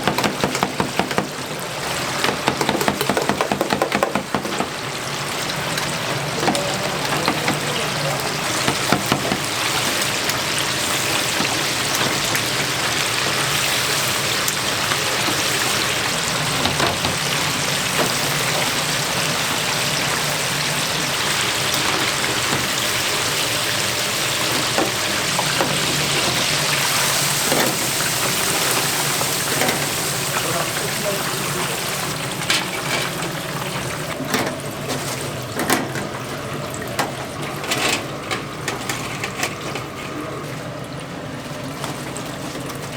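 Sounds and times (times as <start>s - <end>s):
utensils clicking and knocking: 2.2s - 4.8s.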